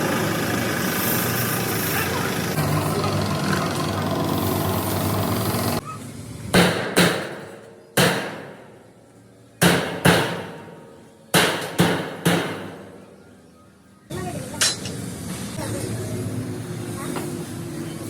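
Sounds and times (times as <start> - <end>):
engine running: 0.0 - 6.5
hammer striking metal: 6.6 - 8.7, 9.6 - 13.0.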